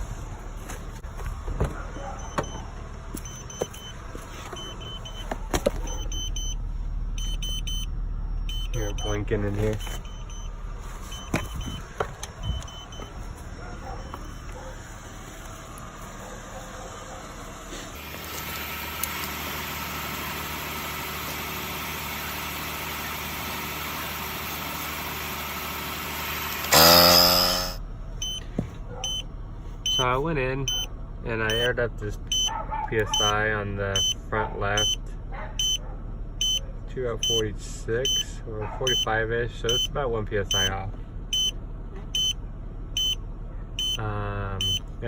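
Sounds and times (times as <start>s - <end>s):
idling car hum: 0.0s - 45.0s
motor running with hiss: 26.6s - 27.8s
monitor beeping: 34.8s - 35.0s, 40.5s - 40.8s, 44.6s - 44.8s.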